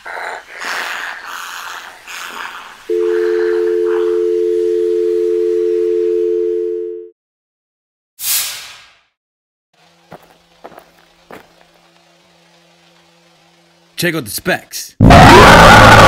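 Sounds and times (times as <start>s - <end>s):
telephone dial tone: 2.9s - 7.1s.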